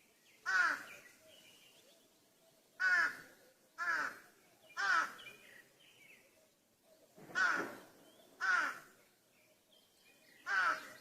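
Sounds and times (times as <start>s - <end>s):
small birds chirping: 0.0s - 11.0s
crow cawing: 0.5s - 0.9s, 2.8s - 4.2s, 4.8s - 5.2s, 7.3s - 7.8s, 8.4s - 8.9s, 10.5s - 11.0s.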